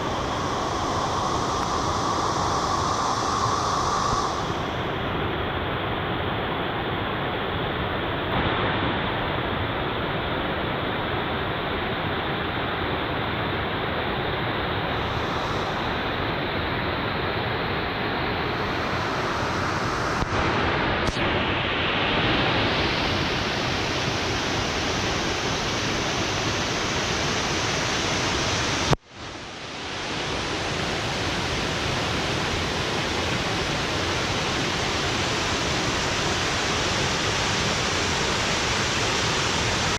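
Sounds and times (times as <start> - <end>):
small waterfall rushing: 0.0 - 5.0, 14.8 - 39.9.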